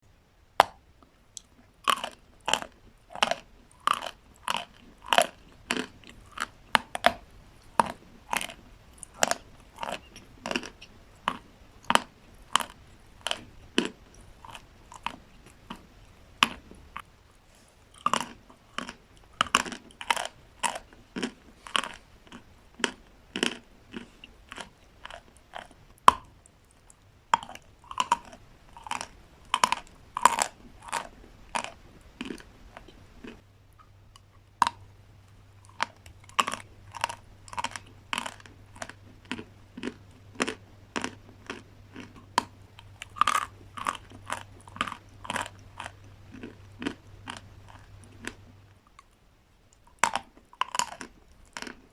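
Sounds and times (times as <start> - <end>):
chalk crunching while chewed: 0.6 - 51.9.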